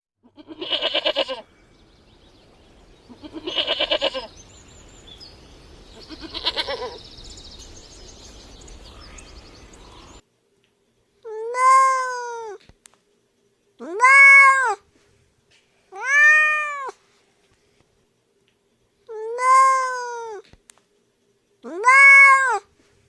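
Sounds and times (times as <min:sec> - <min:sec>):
goat bleating: 0:00.2 - 0:01.5, 0:03.1 - 0:04.3, 0:06.0 - 0:07.0
faint high chirping: 0:01.4 - 0:10.2
cat meowing: 0:03.2 - 0:04.3, 0:06.0 - 0:07.0, 0:14.0 - 0:14.8, 0:15.9 - 0:17.0, 0:21.8 - 0:22.7.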